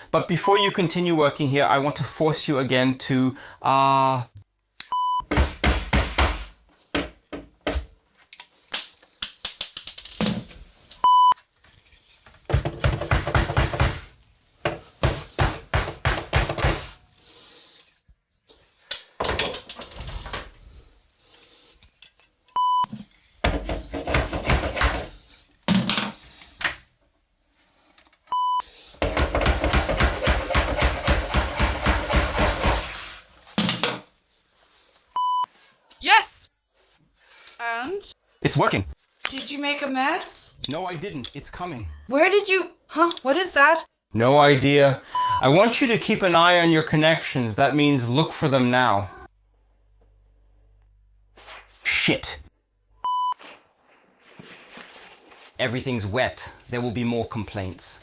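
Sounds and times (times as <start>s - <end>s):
clattering and knocking: 12.4s - 14.0s, 29.0s - 32.9s
short electronic beeps: 53.0s - 53.4s.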